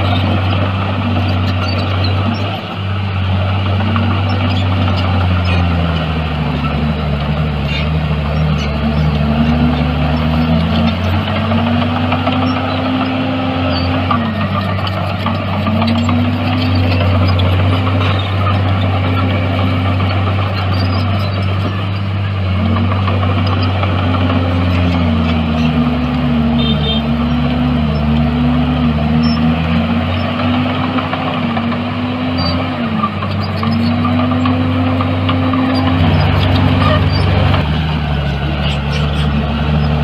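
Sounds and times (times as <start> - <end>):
heavy diesel engine revving: 0.0 - 40.0.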